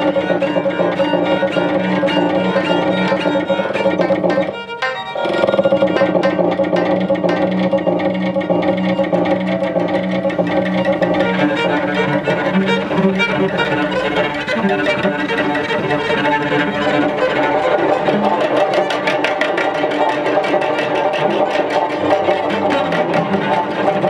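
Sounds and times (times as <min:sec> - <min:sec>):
cello bowing low notes: 0:00.0 - 0:24.0
electronic layered texture: 0:05.3 - 0:24.0.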